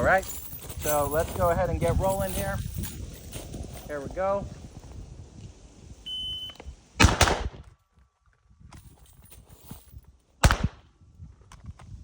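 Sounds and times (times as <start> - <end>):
pistol shot: 7.0 - 7.6, 10.4 - 10.8
rifle shots: 7.0 - 7.6, 10.4 - 10.8.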